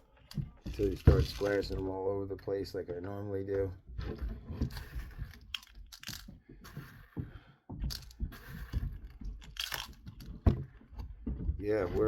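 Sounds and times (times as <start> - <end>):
plastic packaging rustling: 0.7 - 1.8, 4.7 - 6.3, 9.4 - 10.3.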